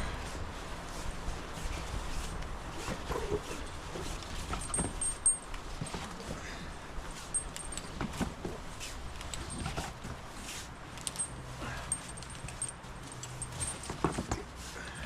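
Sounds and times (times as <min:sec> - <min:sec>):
faint metallic clinks: 0:03.4 - 0:08.6, 0:09.2 - 0:15.0.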